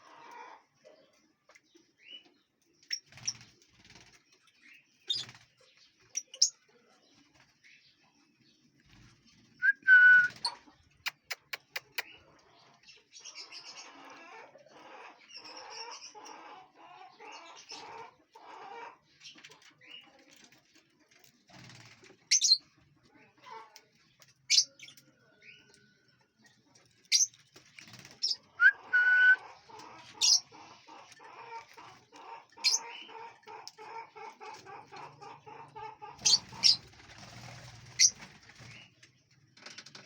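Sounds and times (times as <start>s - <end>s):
many birds chattering: 0.0s - 40.0s
lovebirds chirping: 1.7s - 6.7s, 24.3s - 38.9s
bird squawk: 28.2s - 30.5s, 36.2s - 36.8s.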